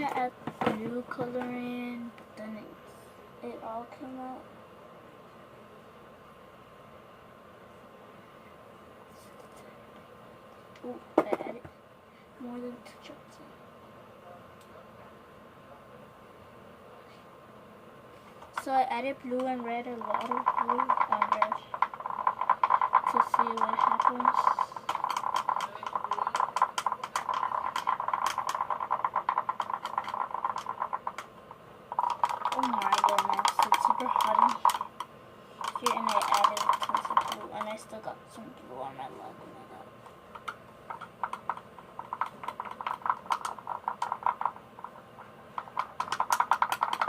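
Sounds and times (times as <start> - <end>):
slime squelching as it is stirred: 18.2 - 38.1, 40.4 - 47.0.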